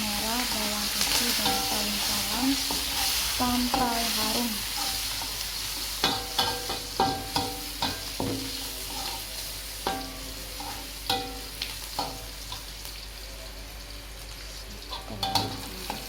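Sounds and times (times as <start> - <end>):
food sizzling in hot oil: 0.0 - 16.0
spatula knocking against wok: 6.0 - 8.6.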